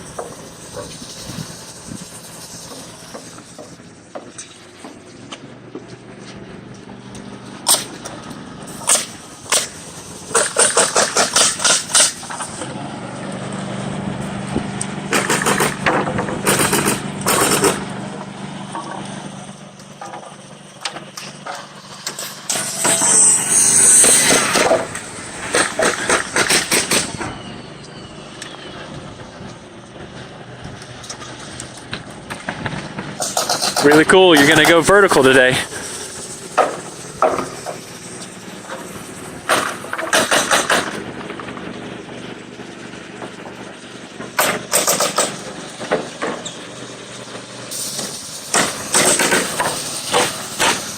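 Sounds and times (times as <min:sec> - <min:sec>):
loud hiss: 0:00.0 - 0:04.1, 0:08.6 - 0:12.6, 0:21.6 - 0:28.8, 0:33.2 - 0:41.0, 0:44.6 - 0:50.9
steady engine hum: 0:00.0 - 0:50.9
hammering knocks: 0:15.1 - 0:17.9, 0:36.6 - 0:37.8.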